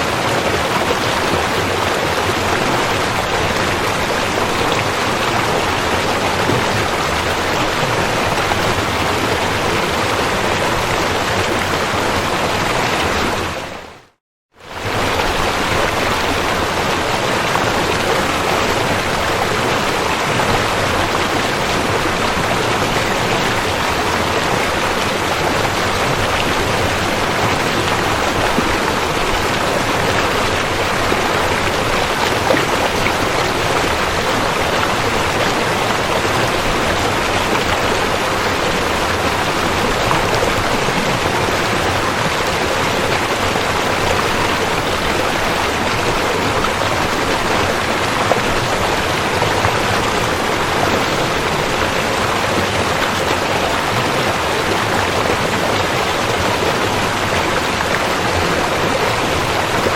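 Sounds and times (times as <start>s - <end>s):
river flowing: 0.0s - 59.9s.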